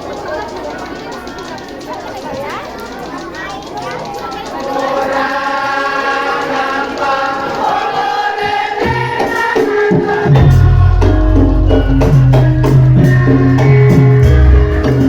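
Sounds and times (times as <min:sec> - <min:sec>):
steady percussion beat: 0:04.6 - 0:15.0
sustained held notes: 0:04.6 - 0:15.0
heavy bass line: 0:10.4 - 0:15.0.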